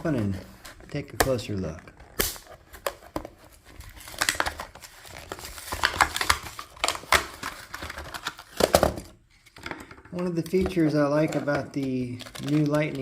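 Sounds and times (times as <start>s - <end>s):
plastic packaging crinkling: 2.0s - 9.1s, 10.4s - 13.0s.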